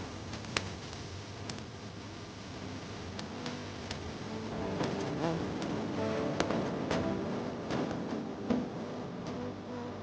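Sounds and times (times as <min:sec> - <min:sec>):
soft music: 0:03.4 - 0:10.0.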